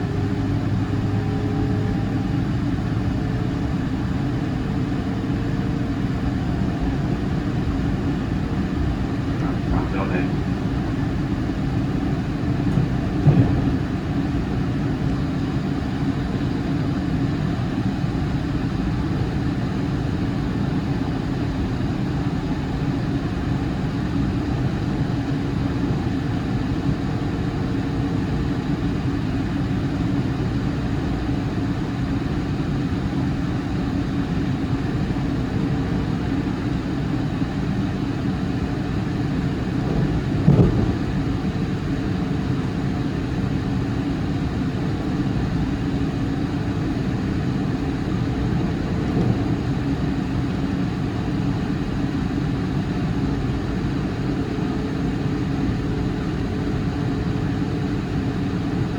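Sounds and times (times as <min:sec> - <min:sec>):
train wheels rumbling on rail: 0:06.8 - 0:18.3, 0:34.0 - 0:44.0, 0:45.2 - 0:52.2
loud thumps: 0:12.7 - 0:13.9, 0:39.7 - 0:42.0.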